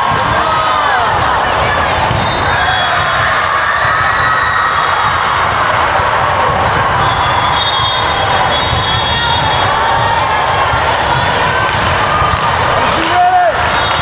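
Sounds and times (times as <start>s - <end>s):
din of many voices: 0.0s - 7.4s
balls thumping: 0.0s - 14.0s
sneakers squeaking on court: 5.7s - 9.8s, 13.6s - 14.0s.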